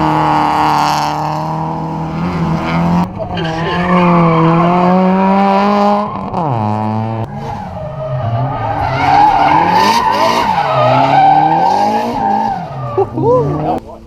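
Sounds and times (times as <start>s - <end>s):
car engine revving: 0.0s - 14.0s.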